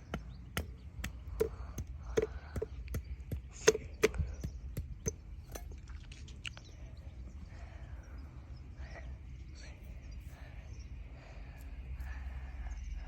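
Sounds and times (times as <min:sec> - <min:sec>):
sharp ringing knocks: 0:00.0 - 0:05.8.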